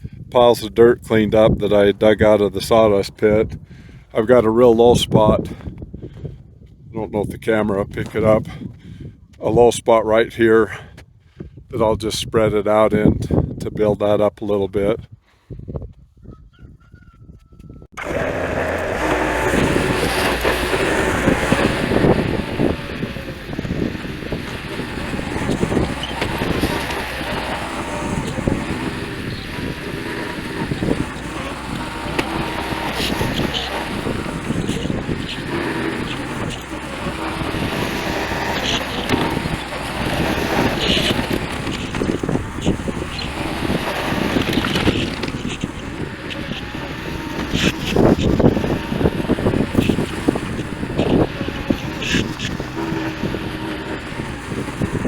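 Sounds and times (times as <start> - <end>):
tractor engine running: 18.0 - 55.0.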